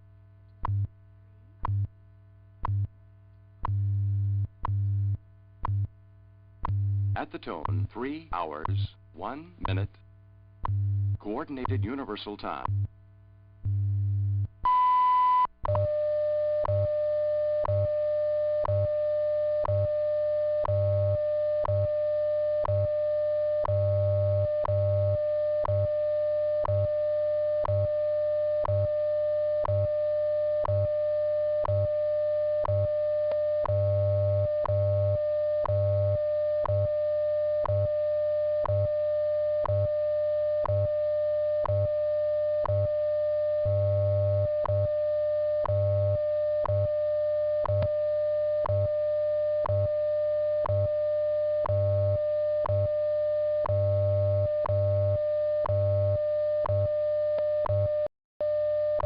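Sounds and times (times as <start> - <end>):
low time code pulses: 6.6 - 10.0, 10.6 - 12.9
steady radio tone: 7.2 - 10.0.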